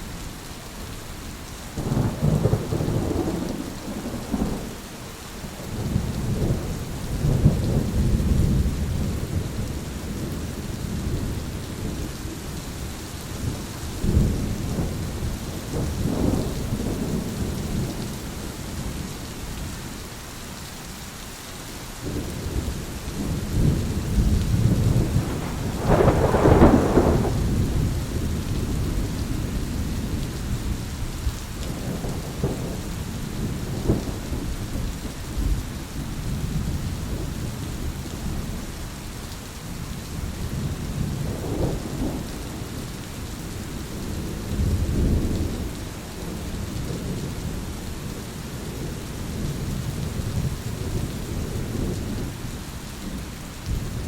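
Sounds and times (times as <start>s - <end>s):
rain hissing: 0.0s - 54.0s
thunder rolling: 23.2s - 29.6s.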